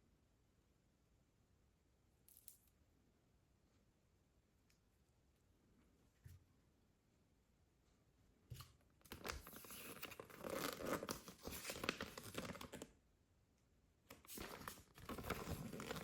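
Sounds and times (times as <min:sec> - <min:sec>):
packaging torn and crinkled: 0:09.1 - 0:12.9, 0:14.2 - 0:16.0.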